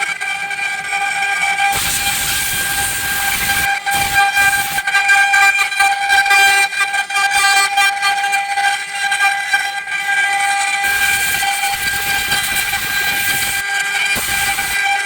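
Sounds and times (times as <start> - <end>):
router bits cutting wood: 1.7 - 4.8, 10.8 - 14.8
router spindles whining: 1.7 - 4.8, 10.8 - 15.0.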